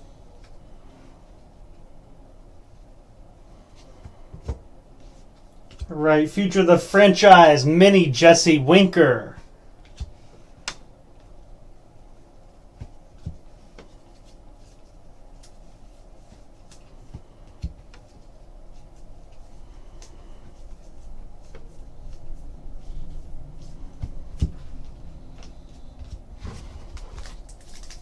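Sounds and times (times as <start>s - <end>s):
low steady hum: 0.0s - 28.0s
cards and wrappers rustling: 12.8s - 28.0s.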